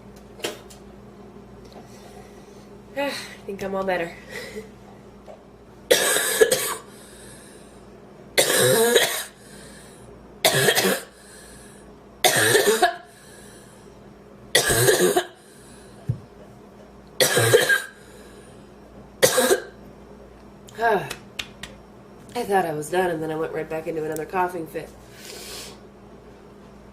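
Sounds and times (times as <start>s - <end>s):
woman coughing: 5.9s - 6.9s, 8.4s - 9.4s, 10.4s - 11.1s, 12.2s - 13.1s, 14.6s - 15.4s, 17.2s - 18.0s, 19.2s - 19.8s.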